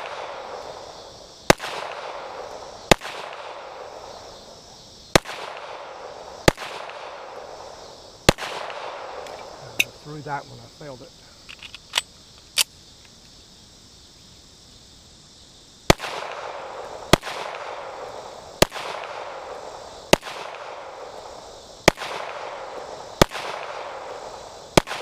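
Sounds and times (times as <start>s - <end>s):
pistol shots with echo: 0.0s - 4.5s, 5.1s - 10.0s, 15.9s - 25.0s.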